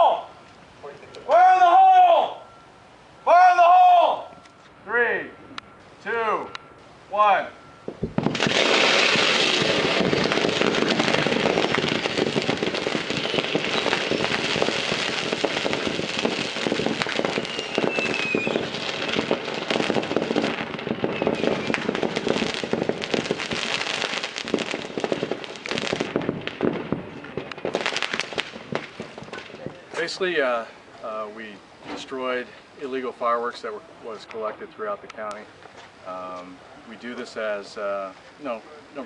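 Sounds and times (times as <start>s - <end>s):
firework whistle: 7.4s - 29.4s
fireworks bangs and crackling: 7.8s - 38.6s.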